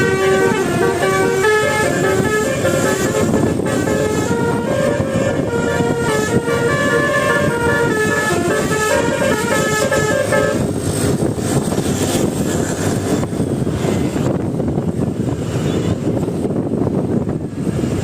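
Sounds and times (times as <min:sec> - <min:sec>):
musical air horn melody: 0:00.0 - 0:10.7
traffic noise: 0:00.0 - 0:18.0.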